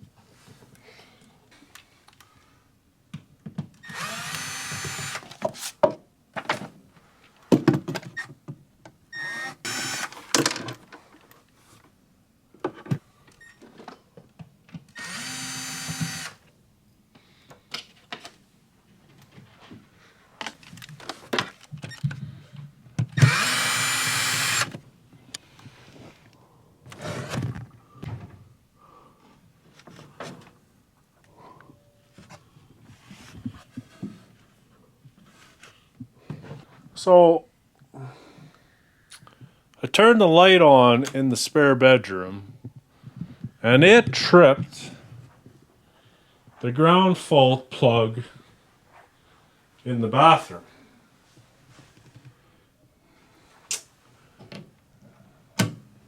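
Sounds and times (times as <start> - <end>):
cordless drill running: 3.8 - 5.4, 9.2 - 10.3, 15.0 - 16.4, 23.2 - 24.8.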